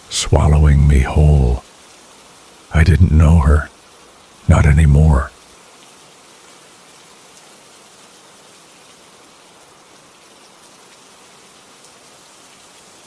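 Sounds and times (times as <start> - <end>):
steady rain falling: 0.0 - 2.7, 5.5 - 13.0.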